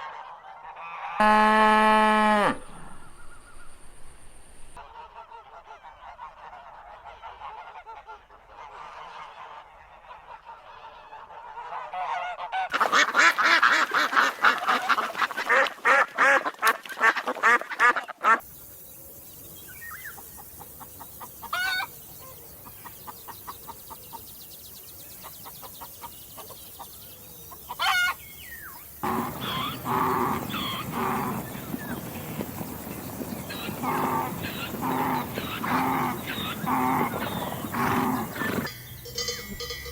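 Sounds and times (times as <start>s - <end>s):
domestic waterfowl honking: 0.0s - 3.8s, 4.6s - 18.5s, 19.8s - 24.2s, 27.5s - 39.9s
fuller animal call: 1.0s - 3.9s, 29.0s - 39.9s.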